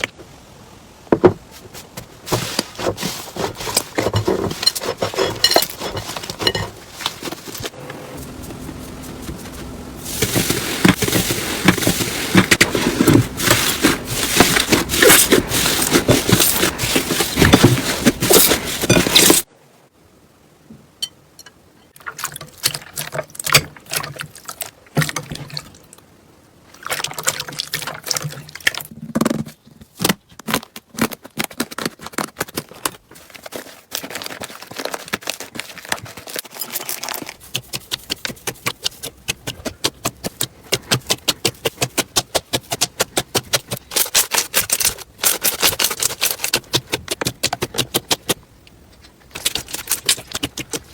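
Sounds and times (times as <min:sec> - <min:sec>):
wet squelches and clicks: 0:45.3 - 0:50.9
slime crackling and popping: 0:49.3 - 0:50.9.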